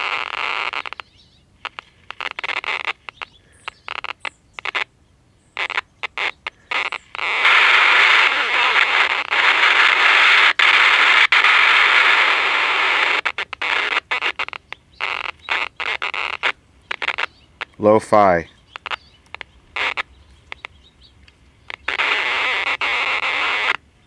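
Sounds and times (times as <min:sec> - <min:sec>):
loud rush of radio static: 0:05.6 - 0:20.1, 0:21.6 - 0:23.8
radio crackling: 0:05.6 - 0:24.0.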